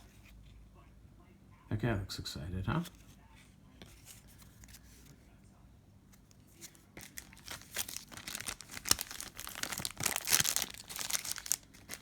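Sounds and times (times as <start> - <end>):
wrapper crinkling and tearing: 7.0 - 12.0.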